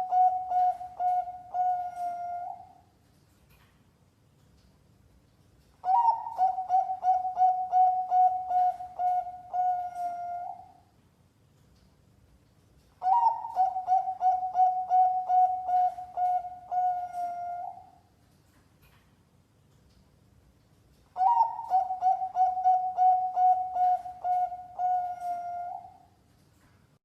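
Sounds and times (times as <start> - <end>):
zebra dove cooing: 0.0 - 2.8, 5.8 - 10.8, 13.0 - 18.0, 21.2 - 26.1.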